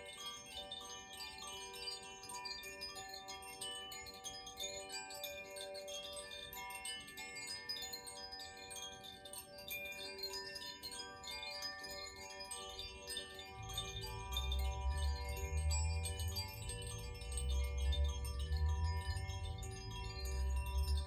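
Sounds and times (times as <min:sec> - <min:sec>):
wind chimes ringing: 0:00.0 - 0:21.0.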